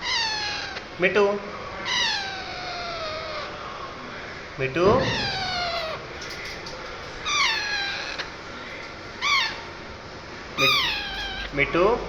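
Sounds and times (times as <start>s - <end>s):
parrot meow-like calls: 0.0s - 1.0s, 1.8s - 3.6s, 4.9s - 6.1s, 7.2s - 8.4s, 9.2s - 9.8s, 10.6s - 11.6s.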